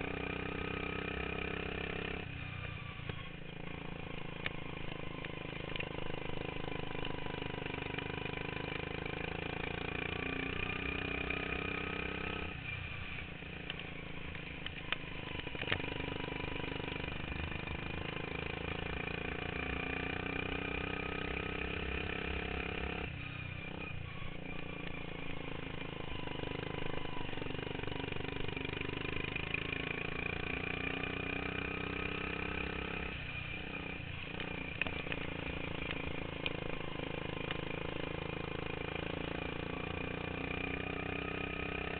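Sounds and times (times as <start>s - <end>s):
racing lawn mower engine: 0.0s - 41.9s.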